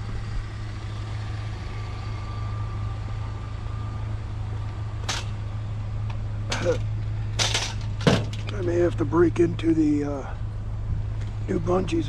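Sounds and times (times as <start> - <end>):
vehicle engine idling: 0.0 - 12.0
short metallic clatter: 5.0 - 5.4, 6.5 - 8.6.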